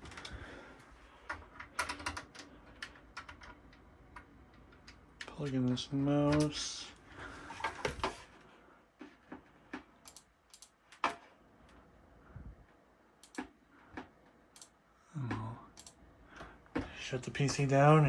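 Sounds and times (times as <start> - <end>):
computer mouse clicks: 10.0 - 10.8, 13.2 - 14.8, 15.7 - 16.0.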